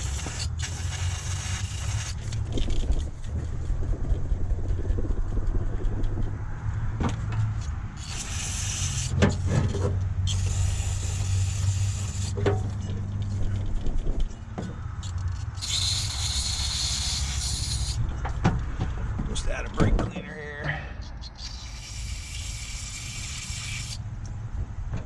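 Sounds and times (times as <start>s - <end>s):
steady low hum: 0.0s - 25.0s
aerosol spray hissing: 8.0s - 9.5s, 10.3s - 12.4s, 15.3s - 18.0s, 21.2s - 24.0s.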